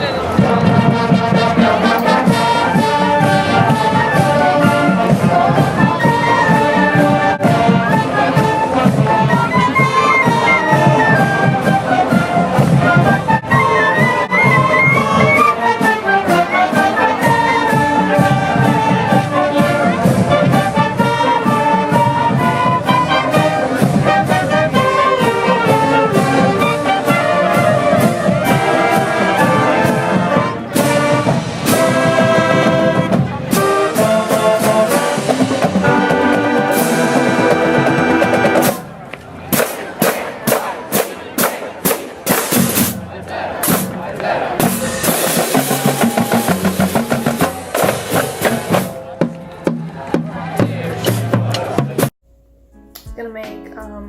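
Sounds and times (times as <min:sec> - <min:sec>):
brass music over a beat: 0:00.1 - 0:38.9.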